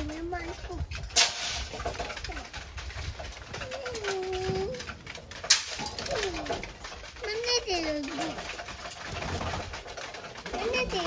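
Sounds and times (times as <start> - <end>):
pigeon cooing: 3.4 - 5.2, 5.8 - 8.6.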